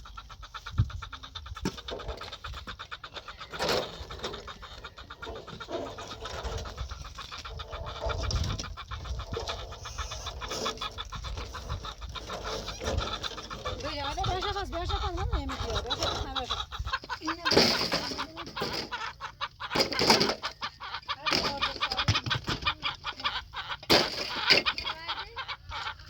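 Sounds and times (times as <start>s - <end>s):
birds calling: 0.0s - 26.0s
steady low rumble: 4.6s - 17.0s.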